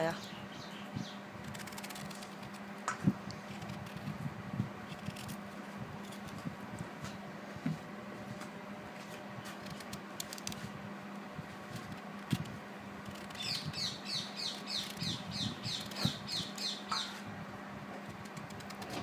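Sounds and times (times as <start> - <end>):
bird chirping: 0.0 - 1.7, 13.2 - 17.2
steady low hum: 0.0 - 19.0
mango peeling clicks and scrapes: 1.4 - 7.2, 9.0 - 10.8, 11.6 - 17.1, 18.0 - 19.0.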